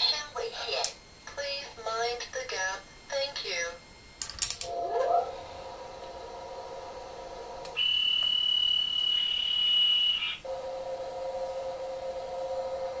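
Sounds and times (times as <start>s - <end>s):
low electric hum: 0.0s - 13.0s
high electronic beep: 7.8s - 10.4s.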